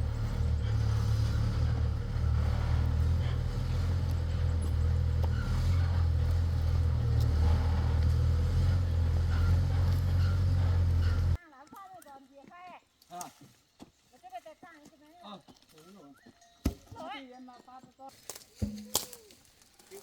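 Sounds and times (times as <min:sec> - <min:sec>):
engine rumbling: 0:00.0 - 0:11.4.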